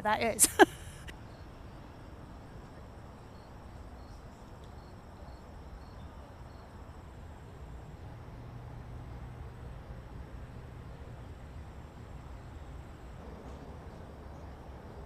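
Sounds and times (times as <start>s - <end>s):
insect chirping: 0.6s - 7.9s.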